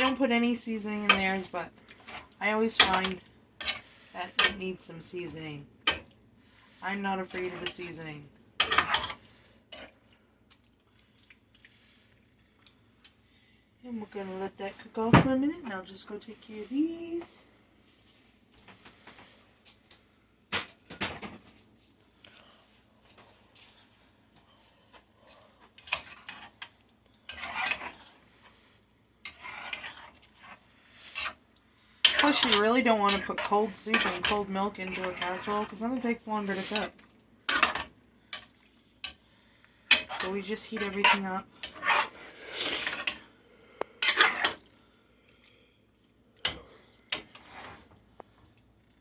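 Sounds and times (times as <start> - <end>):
dishes scraping: 8.6 - 9.9, 27.3 - 28.1, 39.9 - 43.3, 44.0 - 44.6.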